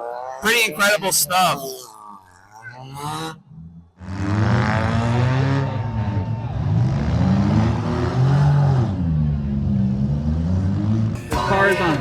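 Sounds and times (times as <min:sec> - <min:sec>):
car engines revving: 0:00.3 - 0:12.0.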